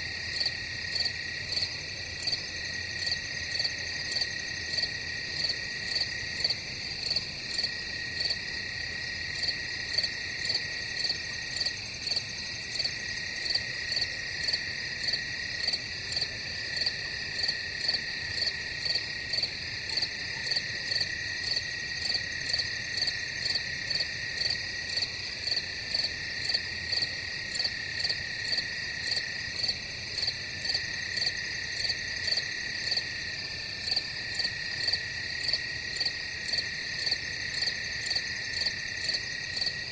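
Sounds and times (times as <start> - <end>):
crickets trilling: 0.0 - 39.9
pulsing cricket chirp: 0.0 - 39.9.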